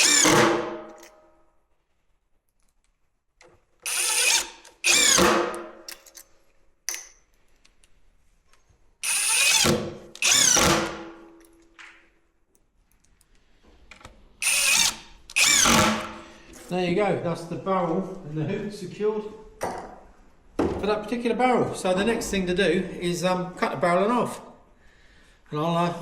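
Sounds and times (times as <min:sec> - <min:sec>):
power drill driving screws: 0:00.0 - 0:00.7, 0:03.8 - 0:05.6, 0:09.0 - 0:11.2, 0:14.4 - 0:16.3.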